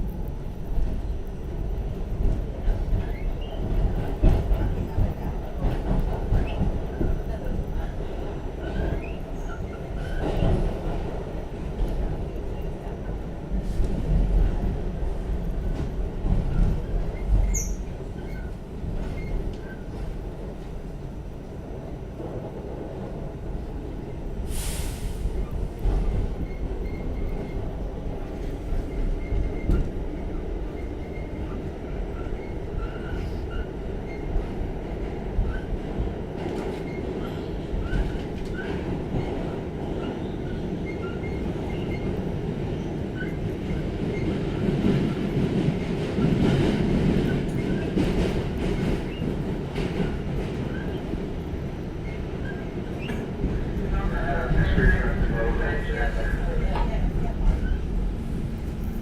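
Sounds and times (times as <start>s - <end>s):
wheels rumbling on rail: 0.0s - 59.0s
brief hiss: 24.5s - 25.4s.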